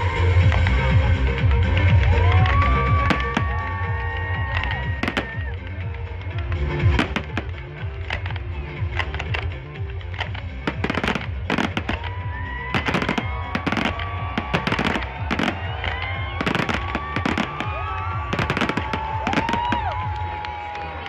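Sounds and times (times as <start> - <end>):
music playing: 0.0 - 21.0
fireworks bangs: 2.3 - 5.5, 6.8 - 20.4.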